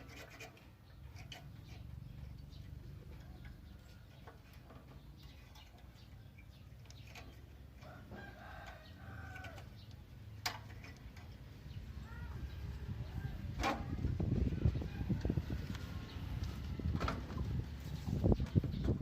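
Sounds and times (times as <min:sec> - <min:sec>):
faint rooster crowing: 0:07.8 - 0:09.7, 0:14.5 - 0:16.0.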